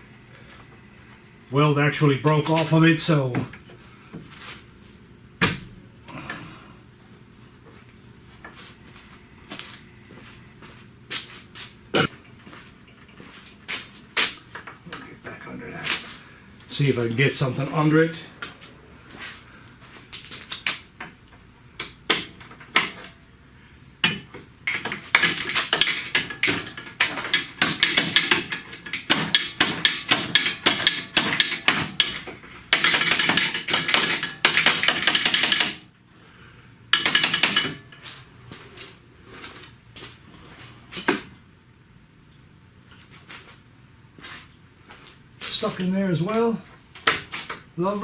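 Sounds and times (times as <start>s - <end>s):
metal tools tapping on steel: 21.8s - 23.2s, 36.9s - 38.0s, 40.9s - 41.4s, 47.0s - 47.7s.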